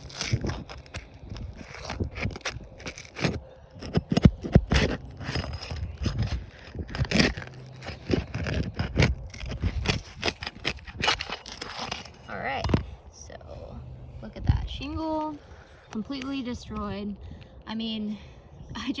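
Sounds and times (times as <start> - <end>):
shingles tearing: 0.0 - 12.8
metal tool scraping shingles: 0.0 - 12.9.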